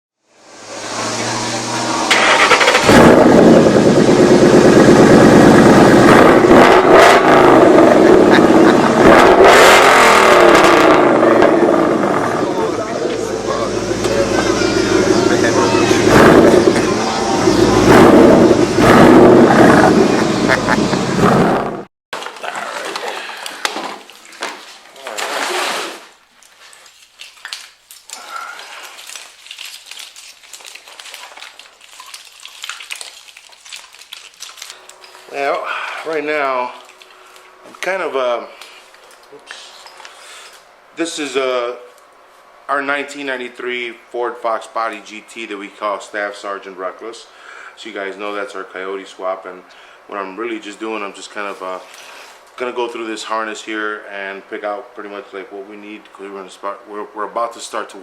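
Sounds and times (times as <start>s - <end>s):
car engine revving: 0.4s - 21.9s.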